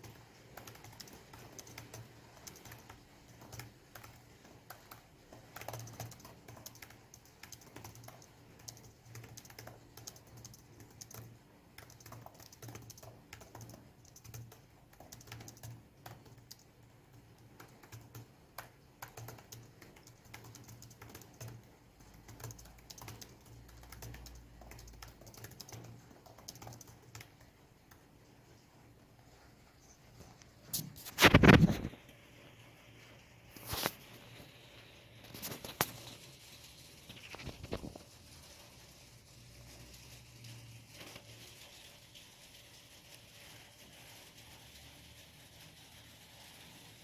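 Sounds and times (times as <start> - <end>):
laptop keyboard typing: 0.0 - 32.1, 33.6 - 38.7.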